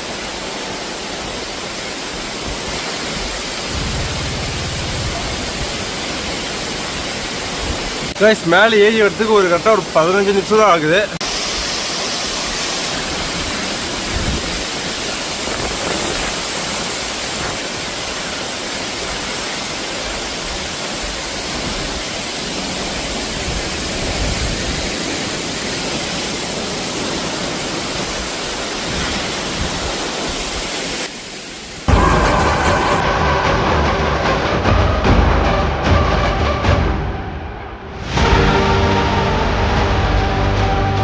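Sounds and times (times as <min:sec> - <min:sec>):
waterfall rushing: 0:00.0 - 0:35.2
wind buffeting microphone: 0:02.3 - 0:08.2, 0:12.9 - 0:18.2.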